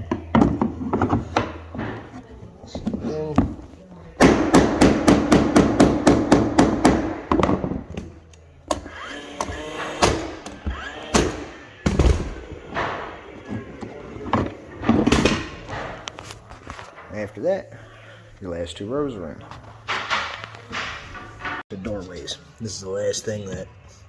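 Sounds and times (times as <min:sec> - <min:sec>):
hammer striking floorboards: 0:04.2 - 0:08.0.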